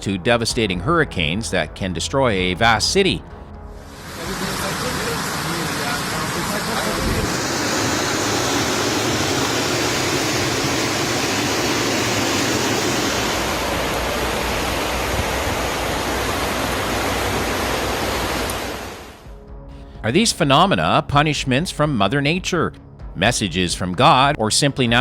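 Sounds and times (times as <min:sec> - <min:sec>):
water rushing: 0:03.8 - 0:19.2.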